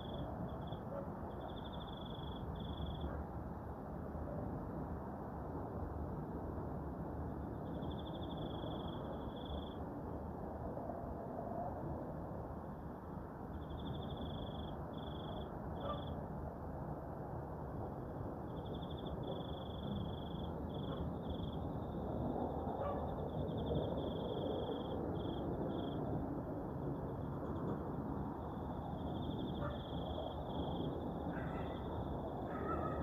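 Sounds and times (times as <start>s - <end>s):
cricket-like insect chirping: 1.4s - 3.1s, 7.8s - 9.8s, 13.6s - 16.1s, 18.5s - 22.0s, 23.2s - 26.2s.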